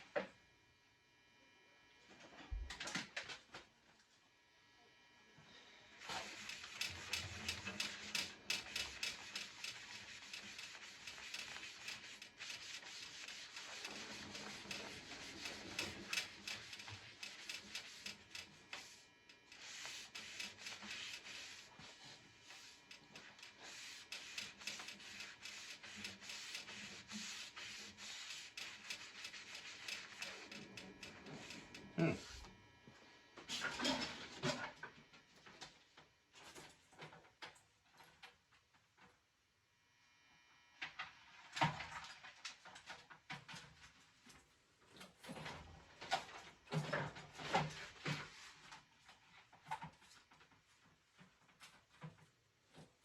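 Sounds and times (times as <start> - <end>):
cloth rubbing on metal: 6.0 - 32.5.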